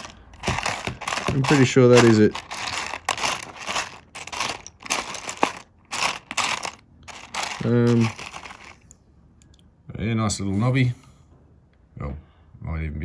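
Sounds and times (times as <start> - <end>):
stones clicking and rattling: 0.0 - 8.9.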